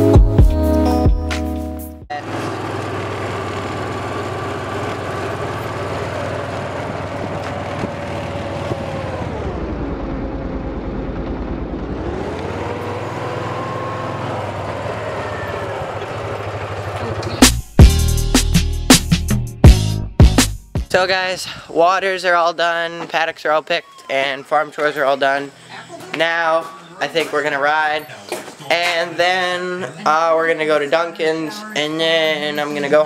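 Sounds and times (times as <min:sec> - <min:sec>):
vehicle engine running: 0:02.1 - 0:20.4.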